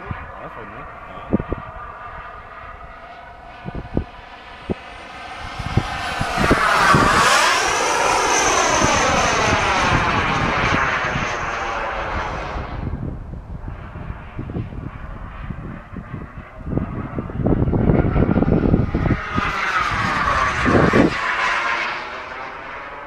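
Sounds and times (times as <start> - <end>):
model jet turbine whining: 0.0 - 23.0.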